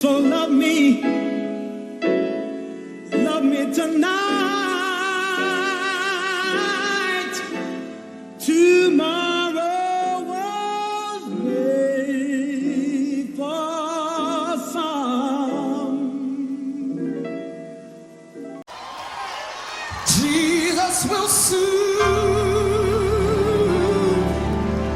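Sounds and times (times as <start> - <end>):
man singing with vibrato: 0.0 - 1.8, 3.1 - 17.5, 20.0 - 24.9
sustained chord accompaniment: 22.0 - 24.9.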